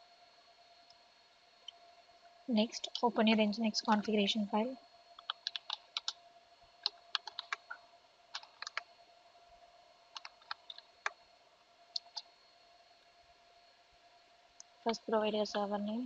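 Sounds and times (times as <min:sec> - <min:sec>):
faint steady hum: 0:00.0 - 0:16.0
typing on computer keyboard: 0:05.2 - 0:06.2, 0:06.8 - 0:08.8, 0:10.1 - 0:11.2, 0:12.0 - 0:12.3.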